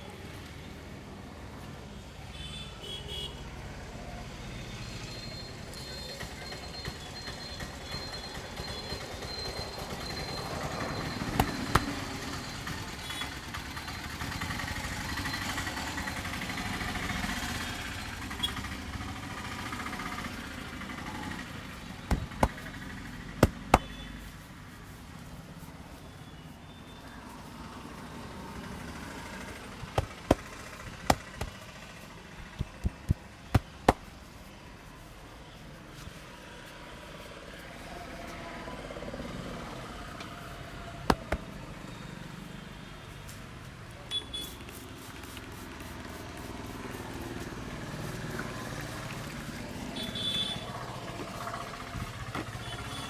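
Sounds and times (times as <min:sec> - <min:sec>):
street traffic noise: 0:00.0 - 0:53.0
sharp hand slaps: 0:11.4 - 0:12.0, 0:31.1 - 0:31.6.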